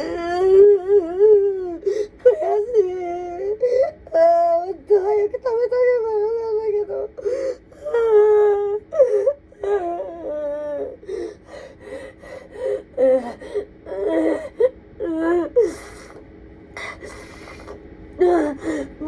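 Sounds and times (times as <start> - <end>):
woman sobbing and wailing: 0.0 - 16.2, 16.8 - 19.0
gasping breaths: 11.0 - 13.7.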